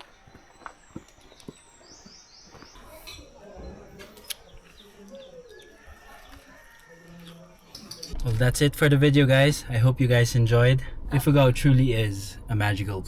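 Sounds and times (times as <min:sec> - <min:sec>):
small bird chirping: 0:00.0 - 0:08.2.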